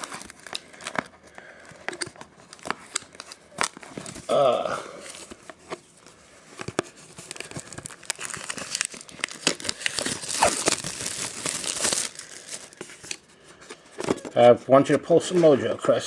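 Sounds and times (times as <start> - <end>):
wrapper tearing and crinkling: 0.0 - 5.4, 6.6 - 13.2.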